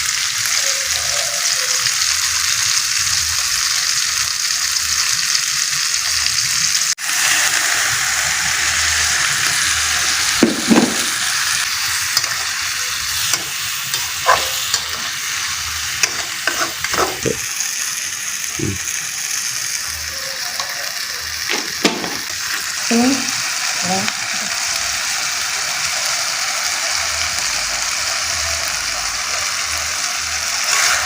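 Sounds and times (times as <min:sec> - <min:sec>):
food sizzling in oil: 0:00.0 - 0:31.0
spatula scraping a pan: 0:11.9 - 0:17.4, 0:30.6 - 0:31.0.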